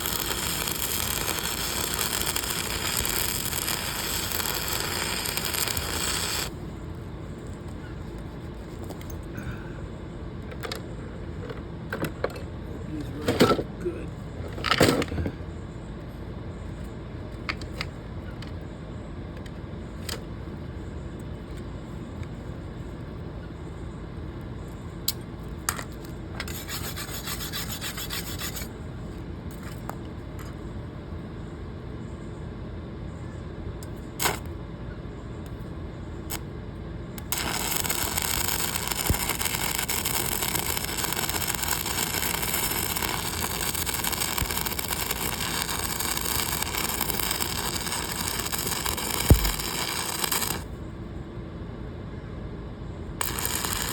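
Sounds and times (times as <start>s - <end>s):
welding arc crackling: 0.0s - 6.6s, 34.2s - 34.5s, 37.2s - 50.7s, 53.2s - 53.9s
low steady hum: 0.0s - 53.9s.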